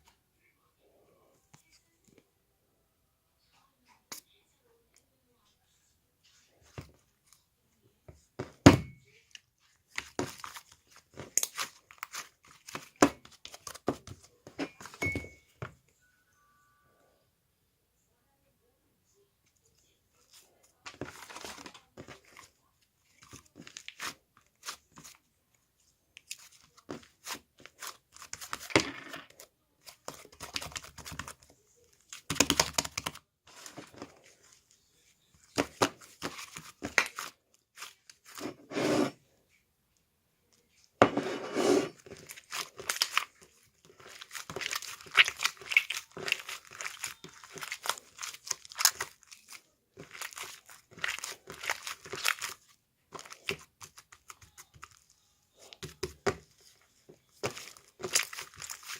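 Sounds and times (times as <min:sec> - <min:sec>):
crinkling and tearing craft materials: 0:08.8 - 0:15.0, 0:19.8 - 0:25.3, 0:26.2 - 0:38.7, 0:41.9 - 0:58.9.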